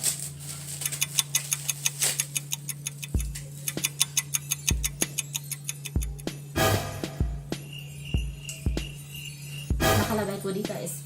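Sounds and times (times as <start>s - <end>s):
steady low hum: 0.0s - 11.0s
fast even ticking: 0.7s - 6.5s
background music: 3.0s - 11.0s
deep beat: 3.1s - 5.3s, 5.9s - 9.1s, 9.7s - 10.8s.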